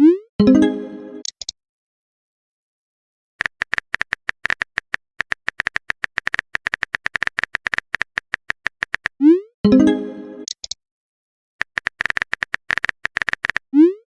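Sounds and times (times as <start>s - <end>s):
phone keyboard typing clicks: 3.4s - 9.2s, 11.6s - 13.6s.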